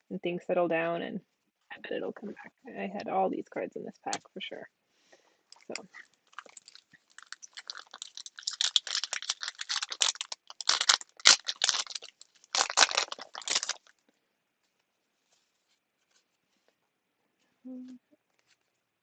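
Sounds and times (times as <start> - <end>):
card pack wrapper crinkling: 5.5 - 14.0.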